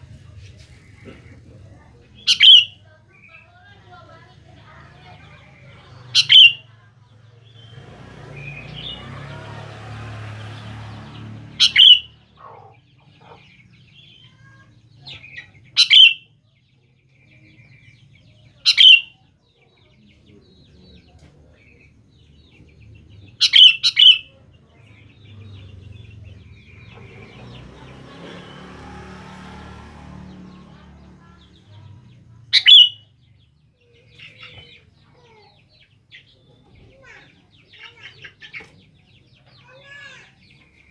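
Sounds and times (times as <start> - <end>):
bulbul sharp calls: 0.9 - 3.7, 4.7 - 6.8, 11.5 - 16.4, 17.2 - 19.3, 23.2 - 28.4, 32.5 - 33.4.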